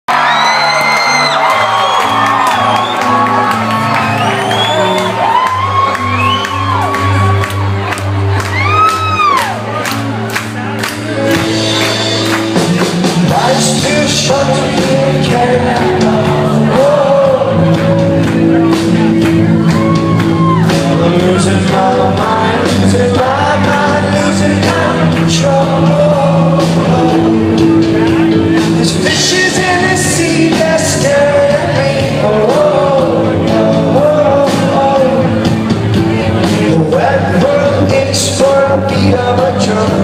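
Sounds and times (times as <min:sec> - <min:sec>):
rock band playing: 0:00.1 - 0:40.0
person singing: 0:10.9 - 0:40.0.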